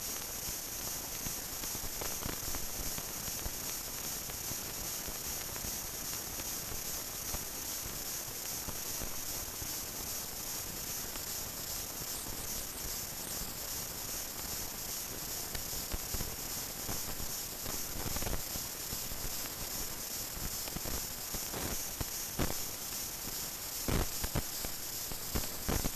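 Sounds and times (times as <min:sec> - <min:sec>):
steady hiss: 0:00.0 - 0:25.9
thin high whine: 0:08.2 - 0:20.1.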